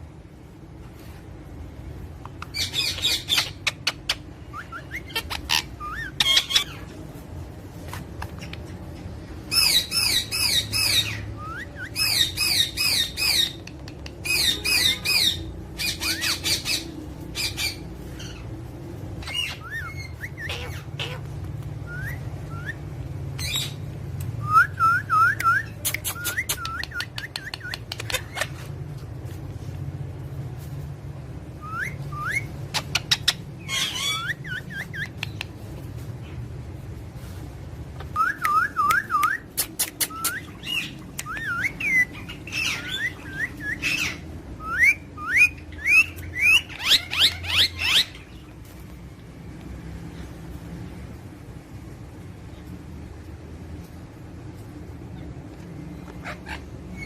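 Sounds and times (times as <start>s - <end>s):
parrots squawking: 2.3s - 6.9s, 9.4s - 28.8s, 31.6s - 35.5s, 38.0s - 48.6s, 56.0s - 57.0s
parrots whistling: 2.4s - 6.9s, 9.5s - 18.5s, 19.2s - 28.7s, 31.6s - 35.6s, 38.0s - 48.6s, 56.0s - 57.0s.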